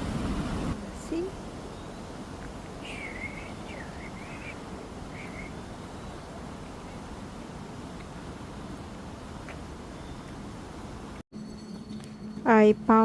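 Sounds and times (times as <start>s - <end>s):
outdoor background noise: 0.0s - 13.0s
bird whistled calls: 2.8s - 6.3s.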